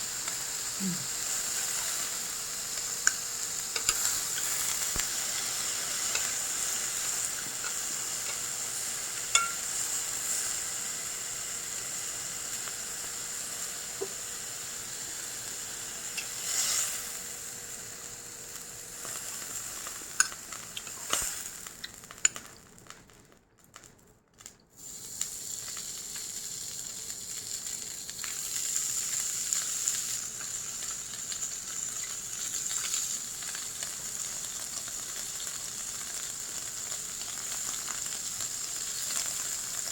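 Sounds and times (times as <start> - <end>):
beef sizzling on hot plate: 0.0 - 23.1, 24.8 - 39.9.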